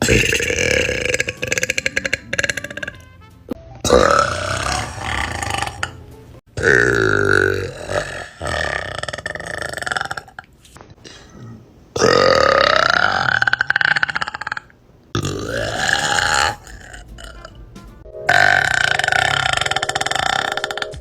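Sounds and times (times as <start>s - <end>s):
women burping: 0.0s - 3.0s, 11.2s - 17.1s, 18.3s - 21.0s.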